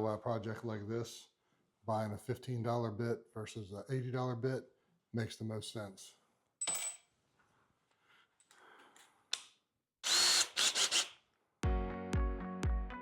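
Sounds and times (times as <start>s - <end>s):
power drill whirring: 10.0s - 11.2s
background music with steady beat: 11.6s - 13.0s.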